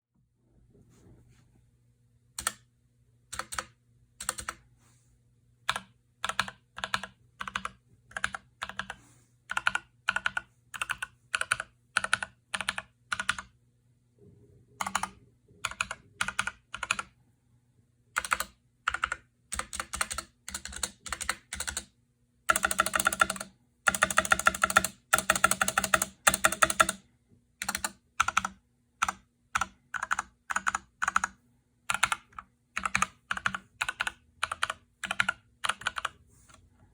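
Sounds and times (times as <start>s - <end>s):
mechanical keyboard typing: 2.4s - 2.7s, 3.3s - 4.6s, 5.6s - 13.6s, 14.8s - 17.1s, 18.1s - 21.9s, 22.5s - 27.0s, 27.6s - 36.2s.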